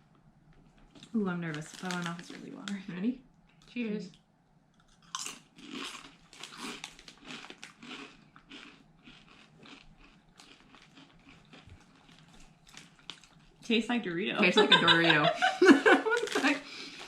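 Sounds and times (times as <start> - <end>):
crunching and chewing chips: 0.5 - 2.9, 4.7 - 13.7, 16.1 - 17.0.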